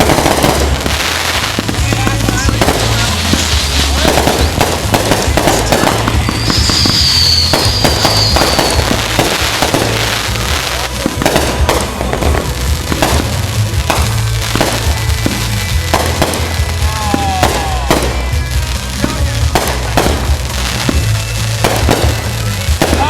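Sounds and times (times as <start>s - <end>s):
fireworks bursts and bangs: 0.0s - 23.0s
music playing: 0.0s - 23.0s.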